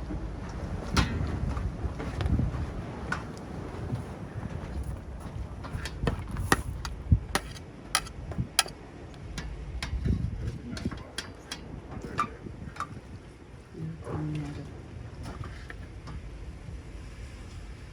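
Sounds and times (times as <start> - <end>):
low steady rumble: 0.0 - 17.9
pot and utensils clicking: 5.6 - 13.0.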